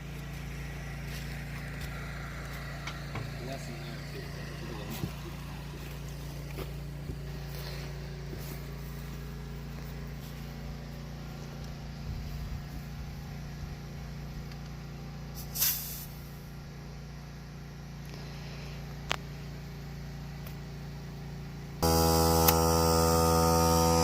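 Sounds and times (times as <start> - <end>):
low mechanical hum: 0.0 - 24.0
short loud hiss: 15.4 - 16.5.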